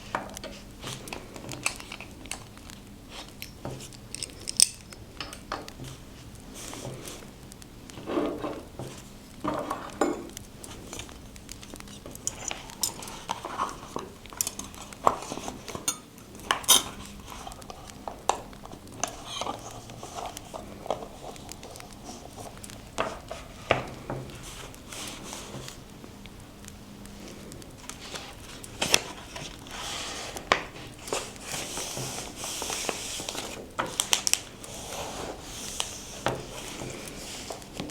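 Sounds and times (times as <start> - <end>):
light taps and clicks of tools: 3.3 - 5.9
paper rustling: 16.5 - 25.9, 27.3 - 37.9.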